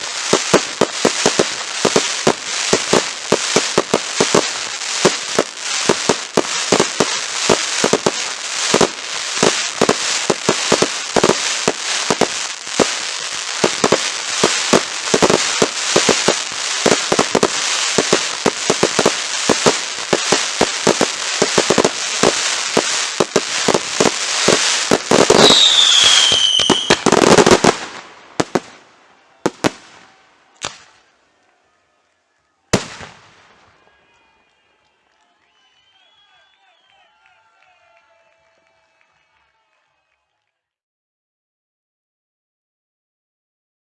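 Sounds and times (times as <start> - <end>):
falling firework whistle: 0.0 - 27.9, 32.7 - 38.8
fireworks bangs and crackles: 0.0 - 31.1, 32.7 - 34.1.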